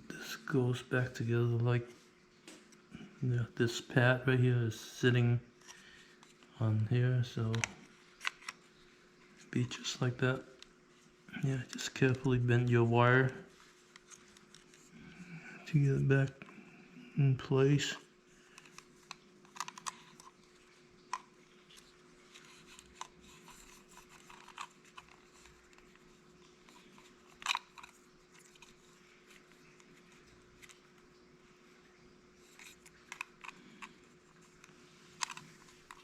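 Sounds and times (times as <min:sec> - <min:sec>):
faint steady hum: 0:00.0 - 0:36.0
plastic housing clicks and rustles: 0:07.4 - 0:08.7, 0:13.9 - 0:14.9, 0:18.5 - 0:31.0, 0:32.4 - 0:36.0.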